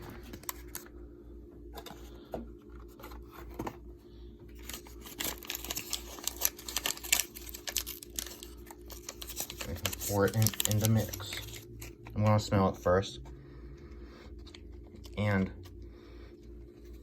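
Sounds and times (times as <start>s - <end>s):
steady low hum: 0.0s - 17.0s
packet tearing and crinkling: 4.6s - 12.2s.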